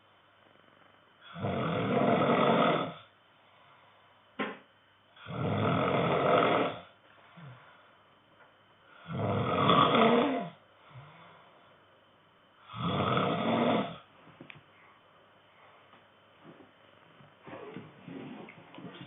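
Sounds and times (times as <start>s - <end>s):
man snoring: 1.2s - 3.1s, 5.2s - 7.6s, 9.0s - 11.2s, 12.6s - 14.1s.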